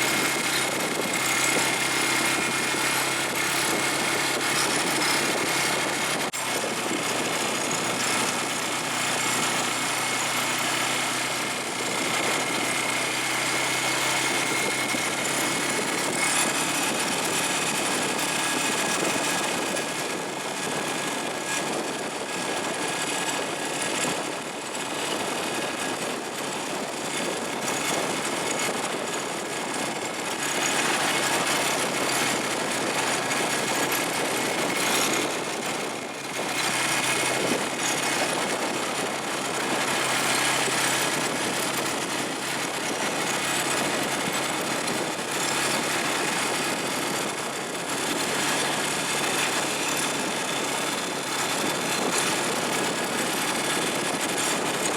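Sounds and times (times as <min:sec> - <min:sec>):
atv engine running: 0:00.0 - 0:54.9.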